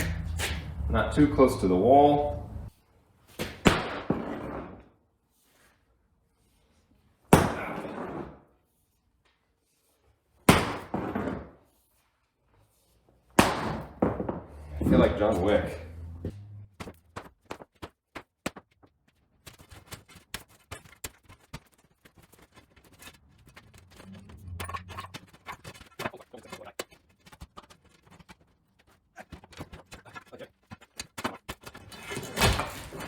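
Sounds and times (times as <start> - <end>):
faint low hum: 14.4 - 16.7, 23.5 - 25.6
sharp knocks and clatters: 16.2 - 33.0.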